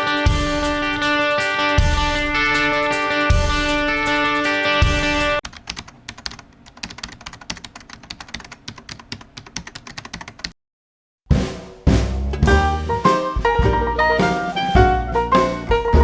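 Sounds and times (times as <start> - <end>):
music: 0.0 - 5.4, 11.3 - 16.0
keyboard typing clicks: 5.4 - 10.5.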